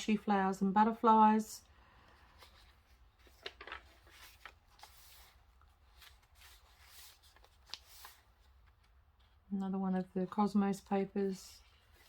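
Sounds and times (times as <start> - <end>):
paper pages rustling: 2.1 - 9.5, 11.6 - 12.0.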